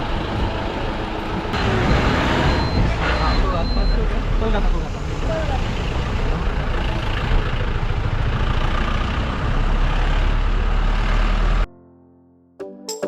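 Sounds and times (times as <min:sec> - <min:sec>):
vehicle engines idling: 0:00.0 - 0:11.6
music: 0:11.7 - 0:13.0.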